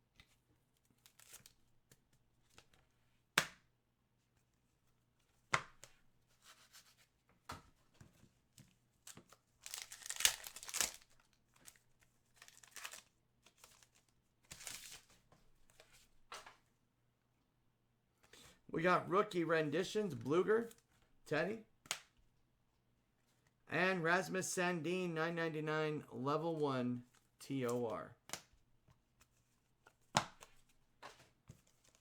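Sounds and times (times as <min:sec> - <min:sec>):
foil packs tearing and crinkling: 0:09.6 - 0:11.2, 0:12.4 - 0:13.1.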